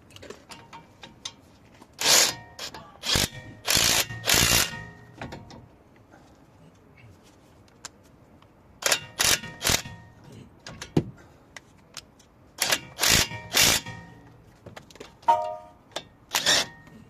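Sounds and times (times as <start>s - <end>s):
ringing metal clank: 3.3s - 5.6s, 13.2s - 14.3s, 15.3s - 15.9s.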